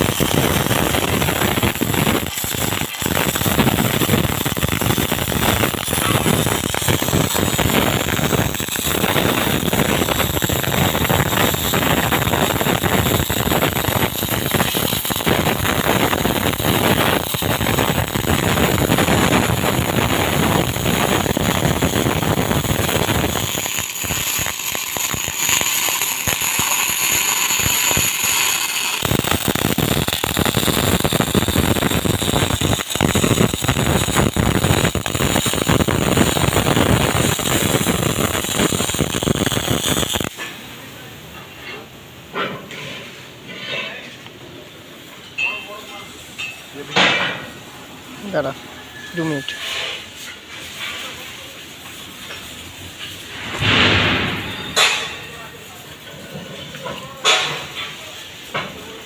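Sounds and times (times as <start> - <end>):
welding arc crackling: 0.0 - 40.5, 51.4 - 56.0.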